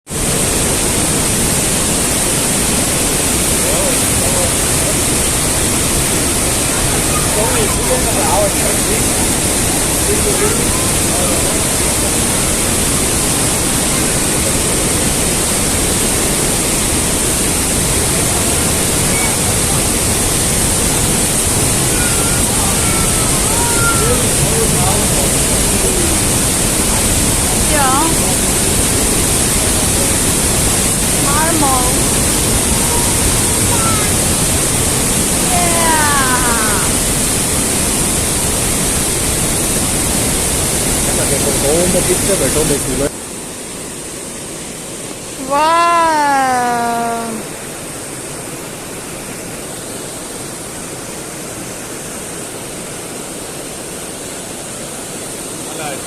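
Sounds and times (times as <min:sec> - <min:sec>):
mountain stream rushing: 0:00.1 - 0:56.0
faint voice: 0:06.6 - 0:15.1, 0:21.9 - 0:28.5, 0:31.2 - 0:34.2, 0:35.4 - 0:37.0, 0:45.4 - 0:47.5.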